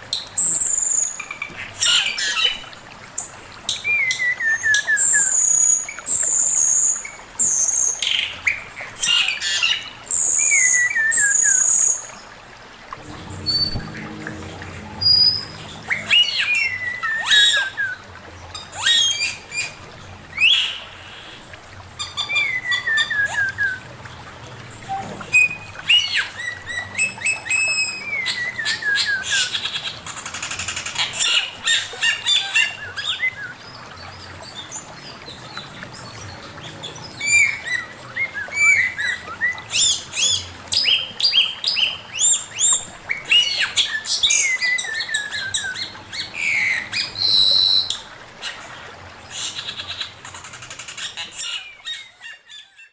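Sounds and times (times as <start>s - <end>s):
high chirping notes: 13.0s - 17.8s.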